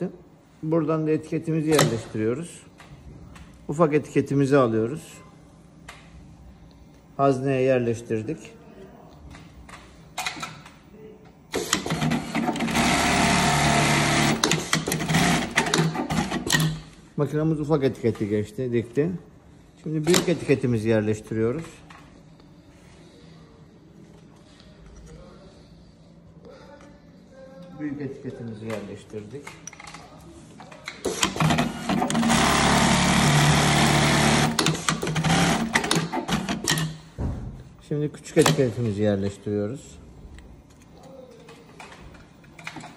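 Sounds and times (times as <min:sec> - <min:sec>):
sewing machine stitching: 0:11.5 - 0:16.7, 0:31.1 - 0:36.9
machine clicks: 0:30.9 - 0:37.0.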